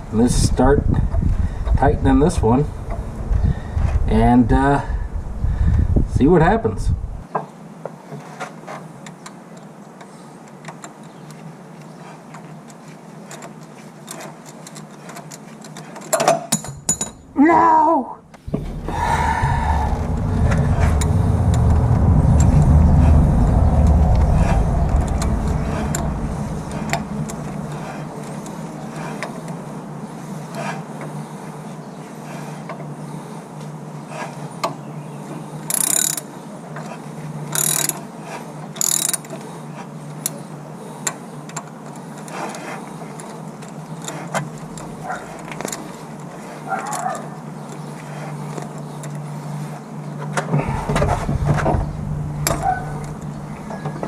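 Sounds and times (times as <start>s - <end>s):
deep rumble: 6.8s - 7.2s, 18.4s - 28.9s, 50.5s - 54.0s
metal tools clinking: 16.1s - 17.4s
steady low hum: 18.2s - 30.2s, 43.9s - 46.2s, 48.9s - 54.0s
ratchet clicking: 35.7s - 36.3s, 37.6s - 38.0s, 38.8s - 39.4s.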